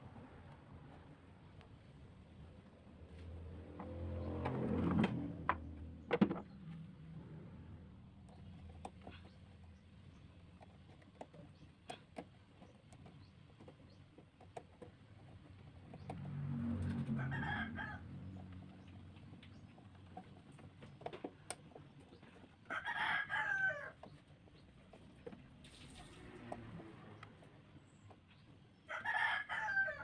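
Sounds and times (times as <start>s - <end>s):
faint clicks and taps: 8.1s - 17.2s, 18.3s - 22.8s
rooster crowing: 16.8s - 18.4s, 22.7s - 24.0s, 28.9s - 30.0s.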